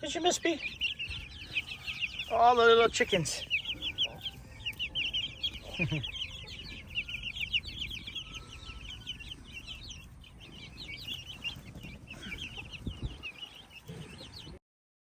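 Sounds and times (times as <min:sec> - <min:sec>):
chicks peeping: 0:00.0 - 0:14.6.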